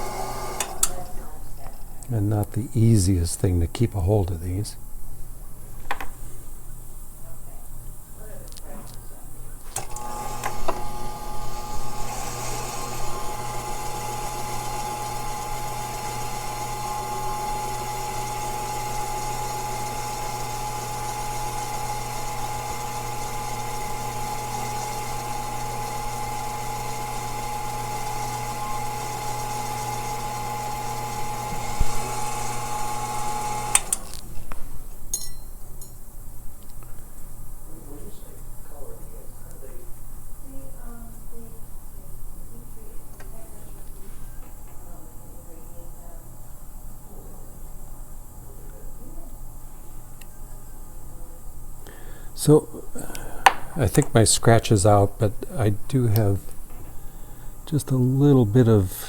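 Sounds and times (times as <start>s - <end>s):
machine motor hum and whine: 0.0s - 0.8s, 9.8s - 34.0s.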